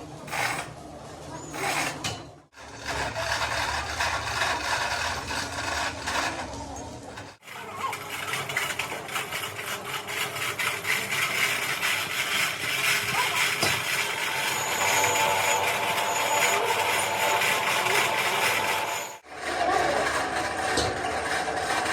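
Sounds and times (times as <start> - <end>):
workshop machinery running: 0.0 - 21.9
steady mid tone: 14.1 - 19.2
faint high whine: 14.2 - 19.2.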